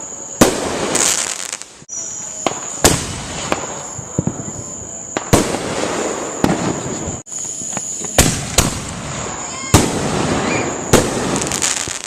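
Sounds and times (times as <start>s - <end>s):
firework bangs: 0.0s - 12.0s
fireworks crackling: 0.0s - 12.0s.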